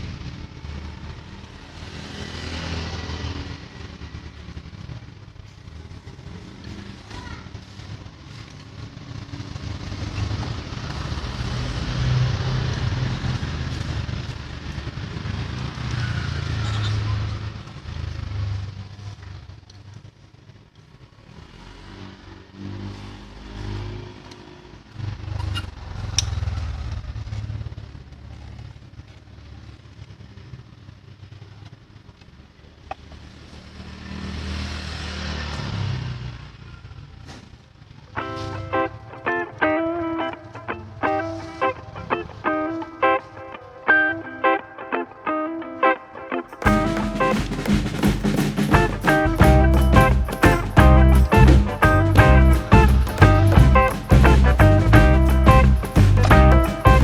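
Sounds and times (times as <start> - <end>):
vehicle engine rumble: 46.7 - 57.0.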